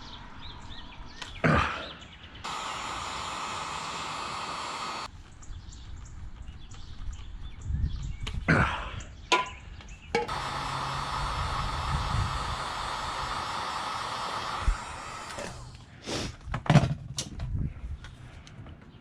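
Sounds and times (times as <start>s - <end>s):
heat gun blowing: 2.4s - 5.1s, 10.3s - 16.3s.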